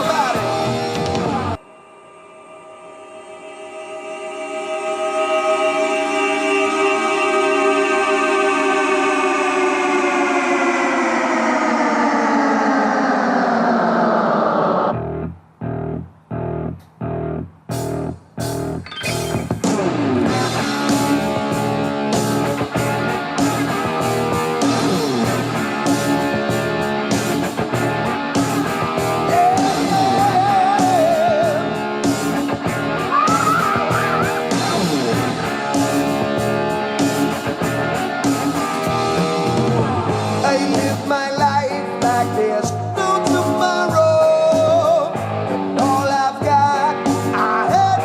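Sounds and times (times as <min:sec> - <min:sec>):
rock band playing: 0:00.0 - 0:01.6, 0:14.9 - 0:48.0
person singing: 0:01.3 - 0:14.9, 0:29.2 - 0:31.8, 0:33.0 - 0:35.2, 0:40.4 - 0:48.0.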